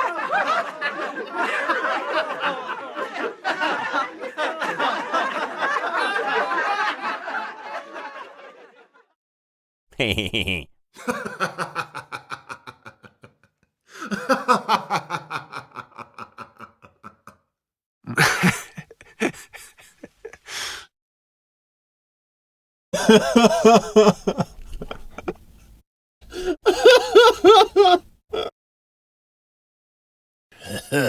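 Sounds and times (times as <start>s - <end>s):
men laughing: 0.0s - 9.0s, 10.0s - 17.4s, 18.1s - 20.7s, 23.0s - 25.4s, 26.3s - 28.5s.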